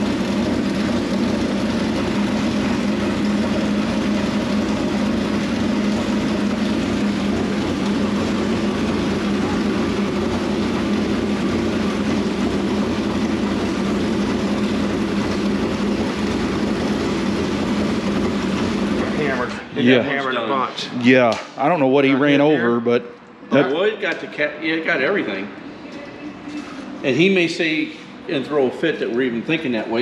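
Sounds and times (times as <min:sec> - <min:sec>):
race car engine idling: 0:00.0 - 0:19.4.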